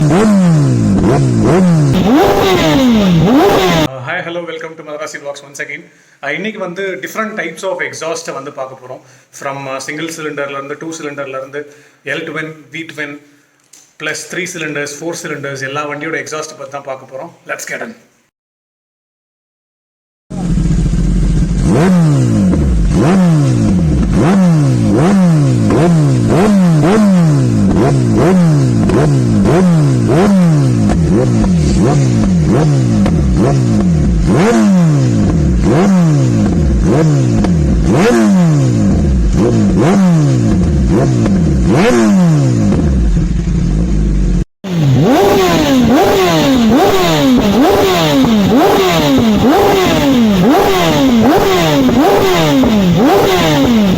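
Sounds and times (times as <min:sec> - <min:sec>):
motorcycle engine revving: 0:00.0 - 0:03.9, 0:20.3 - 0:53.9.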